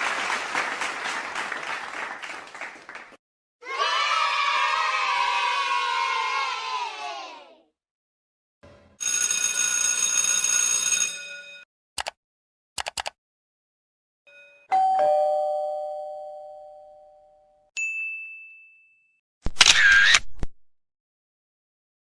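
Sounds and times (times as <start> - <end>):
quick clicks: 12.8 - 13.2
held ringing tone: 14.3 - 19.2
two-tone doorbell chime: 14.3 - 19.2.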